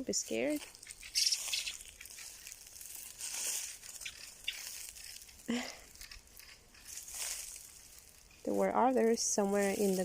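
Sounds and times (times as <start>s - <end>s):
dry grass rustling: 0.0s - 10.0s.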